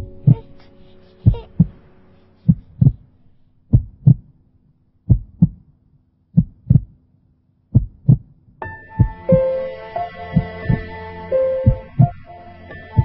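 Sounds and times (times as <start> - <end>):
heartbeat thumps: 0.0 - 0.5, 1.2 - 1.9, 2.5 - 3.1, 3.7 - 4.3, 5.1 - 5.7, 6.4 - 7.0, 7.7 - 8.4, 9.0 - 9.5, 10.4 - 10.9, 11.6 - 12.2
faint steady hum: 0.0 - 7.0.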